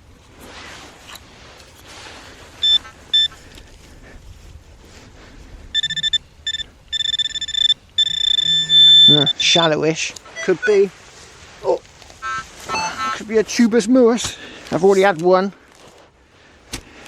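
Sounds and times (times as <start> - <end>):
metal detector beeps: 2.6 - 3.4, 5.7 - 9.6, 10.2 - 10.9, 12.2 - 13.2.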